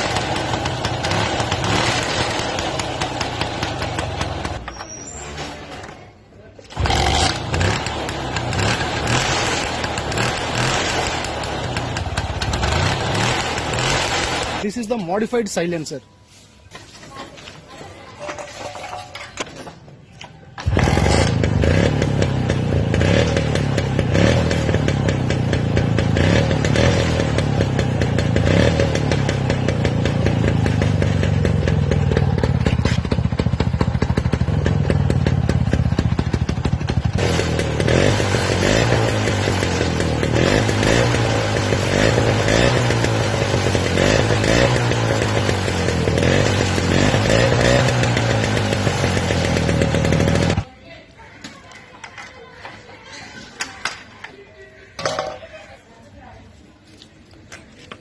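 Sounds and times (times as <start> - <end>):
scooter engine revving: 0.0 - 6.0, 6.7 - 14.6, 20.6 - 50.7.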